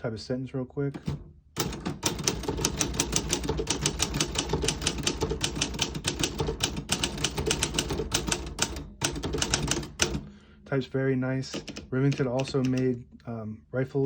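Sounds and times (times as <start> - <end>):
typewriter keys typing: 1.0 - 10.3, 11.4 - 13.0.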